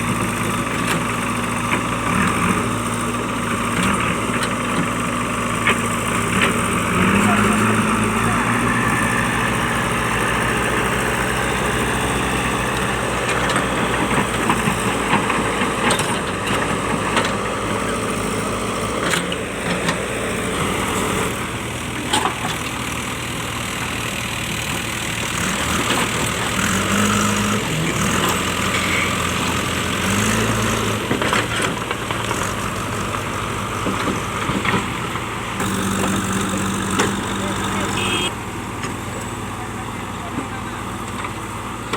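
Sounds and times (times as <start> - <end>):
diesel engine running: 0.0 - 41.9.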